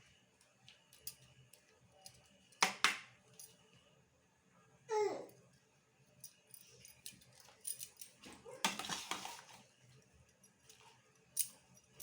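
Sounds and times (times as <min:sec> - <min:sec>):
utensils scraping and rustling: 0:08.7 - 0:09.6.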